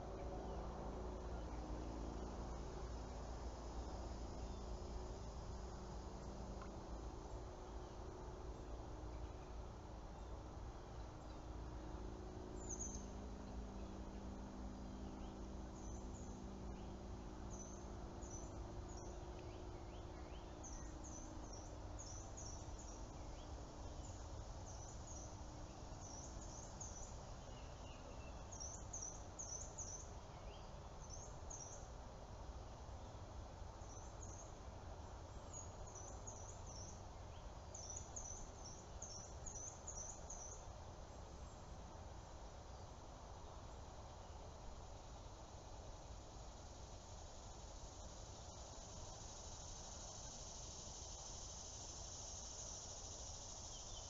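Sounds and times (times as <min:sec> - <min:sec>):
low steady rumble: 0:00.0 - 0:43.7
faint soft clicks: 0:06.5 - 0:06.8, 0:11.0 - 0:11.5
small birds chirping: 0:12.6 - 0:14.2, 0:14.8 - 0:31.9, 0:46.8 - 0:54.0.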